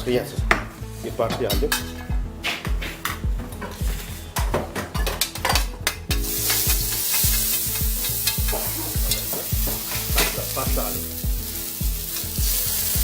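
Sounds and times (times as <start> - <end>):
music with steady beat: 0.0 - 13.0
utensil clinking against pan: 5.0 - 10.9
sauce sizzling: 6.1 - 13.0.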